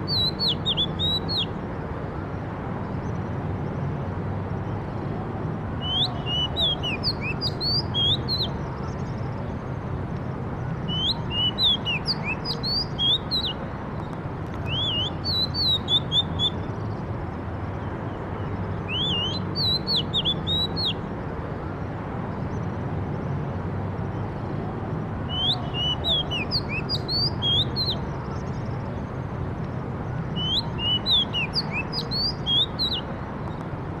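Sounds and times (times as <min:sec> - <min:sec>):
bird chirping song: 0:00.0 - 0:01.6, 0:05.8 - 0:21.1, 0:25.2 - 0:33.7.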